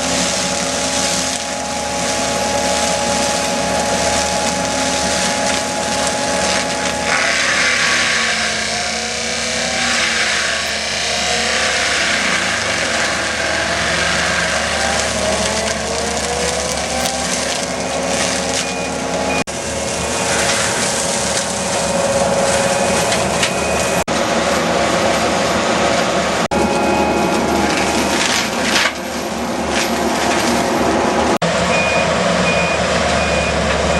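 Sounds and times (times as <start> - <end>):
mulcher rotor grinding wood: 0.0 - 31.6
loader engine and hydraulics: 0.0 - 33.9.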